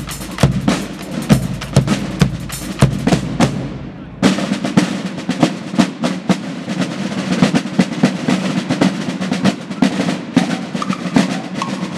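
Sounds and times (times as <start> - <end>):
low drum pulse: 0.0 - 3.9
snare drum strokes: 0.0 - 11.9.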